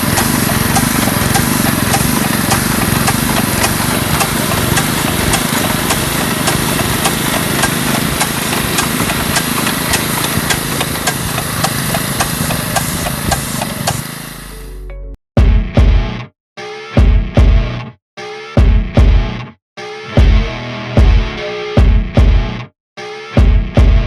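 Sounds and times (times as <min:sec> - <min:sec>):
regular ticking: 0:00.0 - 0:14.0
small engine running: 0:00.0 - 0:14.8.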